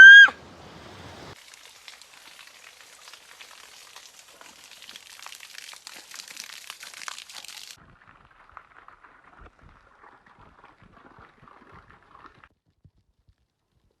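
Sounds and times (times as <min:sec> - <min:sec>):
waterfall spray hiss: 0:00.0 - 0:07.8.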